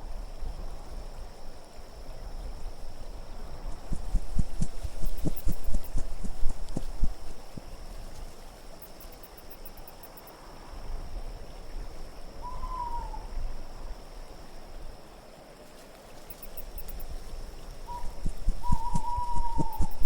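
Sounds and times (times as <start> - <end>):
wind blowing: 2.3 - 8.8, 16.6 - 20.0.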